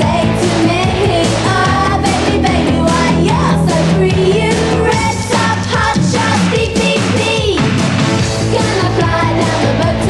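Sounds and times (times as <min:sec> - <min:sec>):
woman singing: 0:00.0 - 0:07.6, 0:08.5 - 0:10.0
drums: 0:00.0 - 0:10.0.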